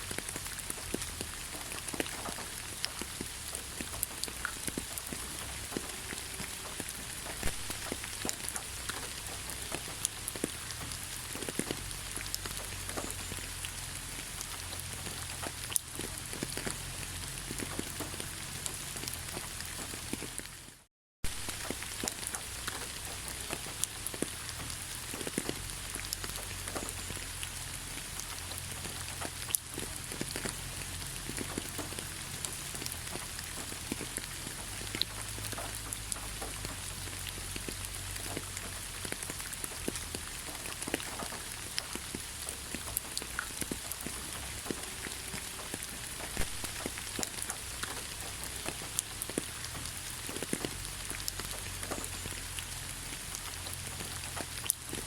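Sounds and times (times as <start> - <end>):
raindrops ticking on a surface: 0.0 - 55.0
steady rainfall: 0.0 - 55.0.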